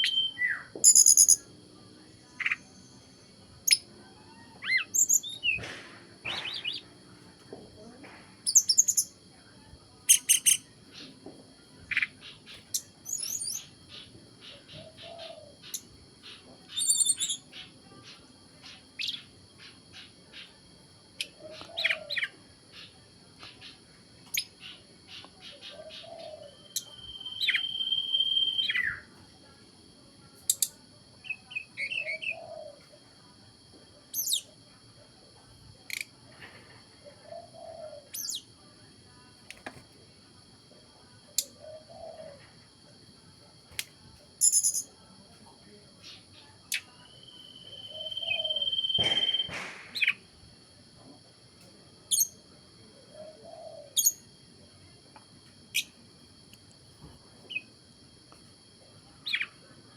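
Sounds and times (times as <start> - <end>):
songbird chirps and trills: 0.0 - 59.9
held whistle-like bird note: 48.0 - 49.7.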